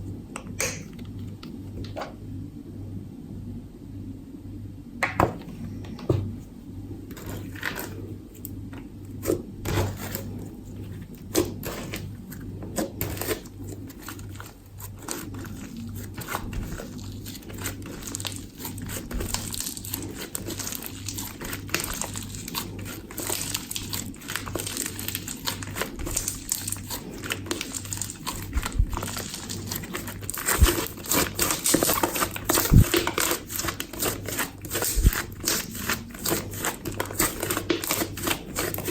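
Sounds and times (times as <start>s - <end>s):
faint steady hum: 0.0s - 38.9s
slime crackling and popping: 11.0s - 38.9s.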